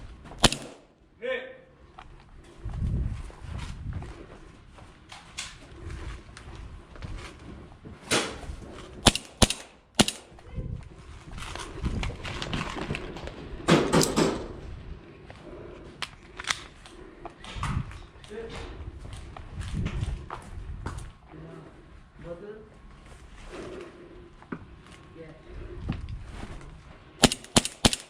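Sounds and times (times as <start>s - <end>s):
airsoft gun shots: 0.4s - 0.9s, 9.0s - 10.3s, 27.2s - 28.0s.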